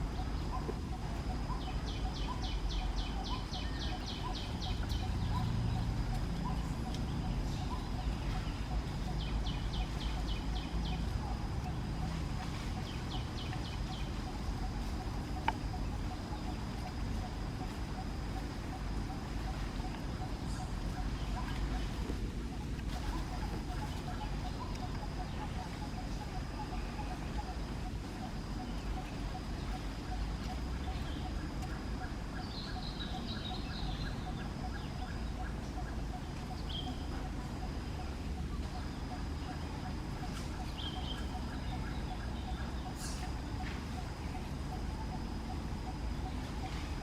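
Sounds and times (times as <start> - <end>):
bird chirping: 0.0 - 22.0, 22.6 - 47.0
steady high whine: 0.0 - 47.0.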